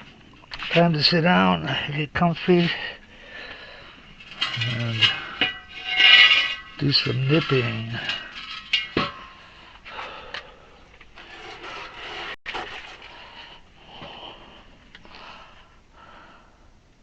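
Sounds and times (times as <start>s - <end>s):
nippers scraping rubber: 11.2s - 13.1s.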